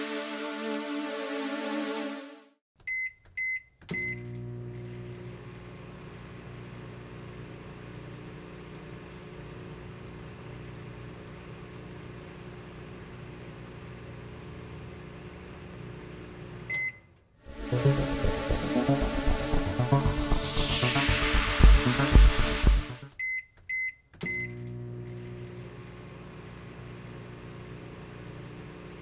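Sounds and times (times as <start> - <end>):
microwave oven humming: 4.2 - 16.8, 24.4 - 29.0.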